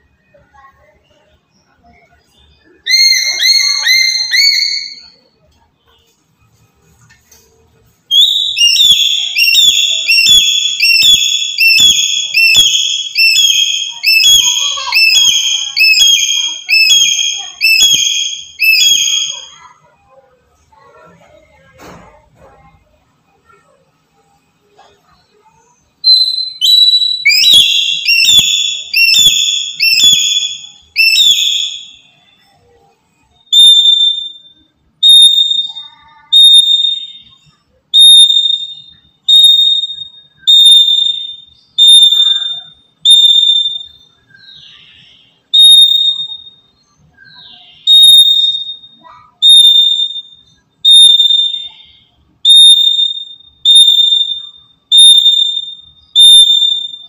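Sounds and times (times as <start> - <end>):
bird shrill whistled notes: 2.7 - 5.2, 8.1 - 19.8, 26.0 - 32.6, 33.5 - 46.5, 47.1 - 57.0.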